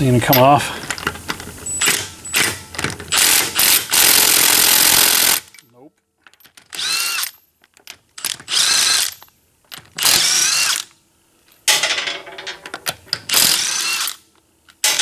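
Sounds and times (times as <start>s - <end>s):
impact wrench on lug nuts: 1.0s - 5.5s.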